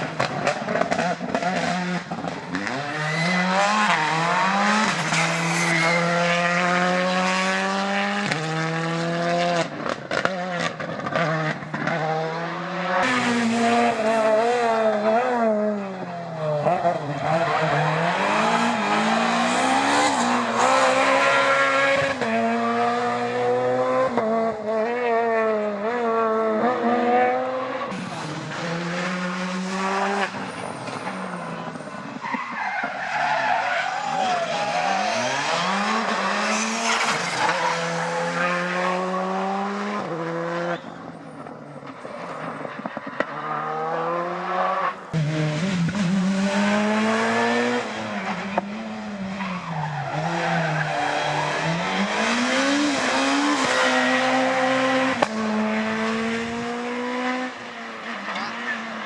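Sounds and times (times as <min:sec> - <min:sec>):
rally car engines revving high: 0:00.0 - 0:59.0
tyre squeal: 0:02.9 - 0:06.4.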